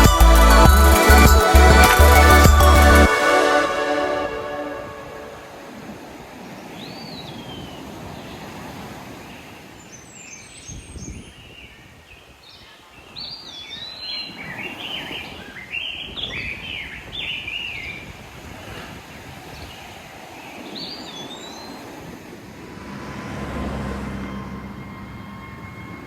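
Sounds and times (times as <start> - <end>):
ocean surf washing: 0.0 - 9.8, 17.9 - 26.0.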